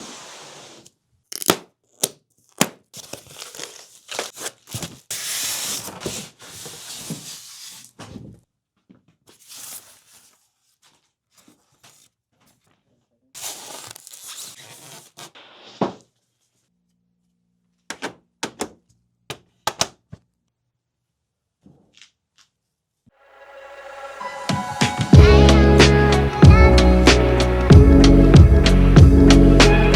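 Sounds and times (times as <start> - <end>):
tape tearing: 1.3 - 7.9, 13.4 - 16.0
cardboard scraping: 3.0 - 8.3, 9.2 - 16.6.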